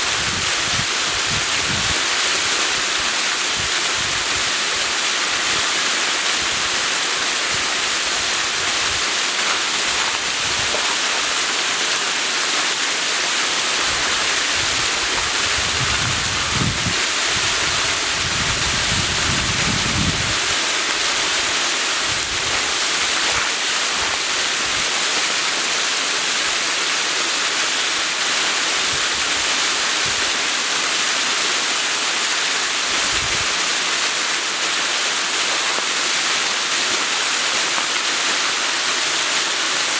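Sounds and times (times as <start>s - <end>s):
wind rumble on microphone: 0.0s - 2.0s, 13.9s - 20.6s, 33.0s - 33.5s
waterfall rushing: 0.0s - 39.9s.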